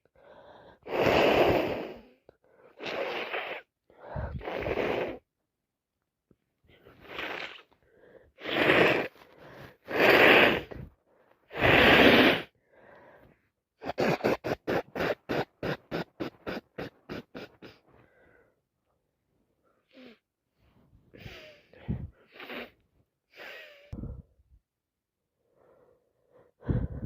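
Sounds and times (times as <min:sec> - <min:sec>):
person blowing nose: 0:00.9 - 0:02.1, 0:02.8 - 0:03.7, 0:04.3 - 0:05.2, 0:07.0 - 0:07.7, 0:08.4 - 0:09.2, 0:09.8 - 0:10.9, 0:11.5 - 0:12.5, 0:13.8 - 0:17.8, 0:22.2 - 0:23.9
short nasal puffs: 0:00.9 - 0:02.2, 0:02.8 - 0:05.2, 0:06.9 - 0:07.8, 0:08.4 - 0:10.9, 0:11.5 - 0:12.5, 0:13.8 - 0:17.9, 0:21.2 - 0:24.0.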